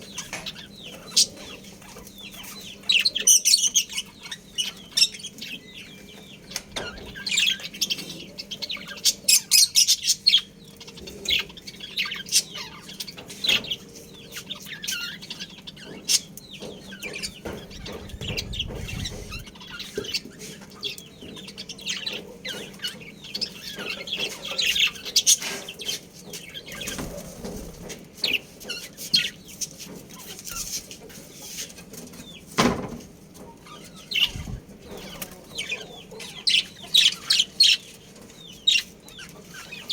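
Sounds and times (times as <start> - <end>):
budgerigars chirping: 0.0 - 27.1, 33.4 - 39.9.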